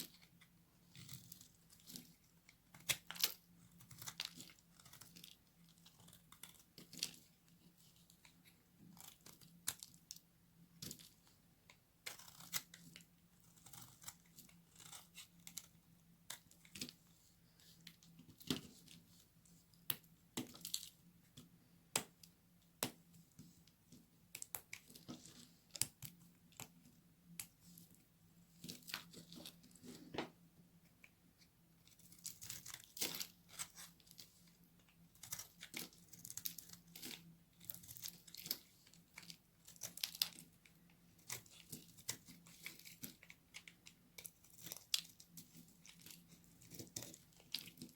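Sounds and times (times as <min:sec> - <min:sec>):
knife cutting dry soap: 0:00.0 - 0:19.1, 0:31.8 - 0:47.9.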